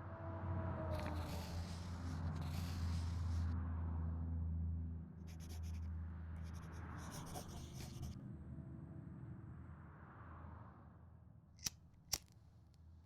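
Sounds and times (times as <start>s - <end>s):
rasping scratches: 0.8s - 3.5s, 5.3s - 5.8s, 6.4s - 8.2s.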